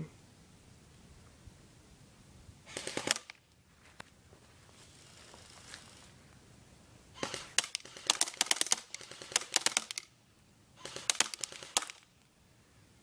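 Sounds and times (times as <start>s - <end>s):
airsoft gun firing full auto: 2.7s - 3.4s, 7.2s - 10.1s, 10.8s - 12.1s.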